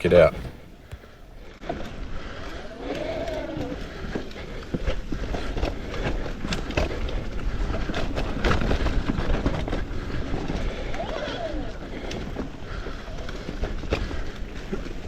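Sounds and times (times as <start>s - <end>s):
tyre and wind rumble: 0.0s - 15.0s
bike knocking and rattling: 3.8s - 15.0s.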